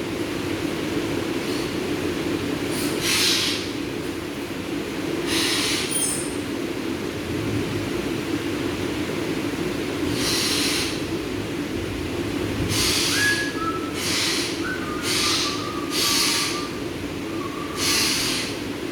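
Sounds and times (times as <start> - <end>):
steady low hum: 11.0 - 18.9
short harsh hissing bursts: 12.6 - 16.8, 17.8 - 18.6.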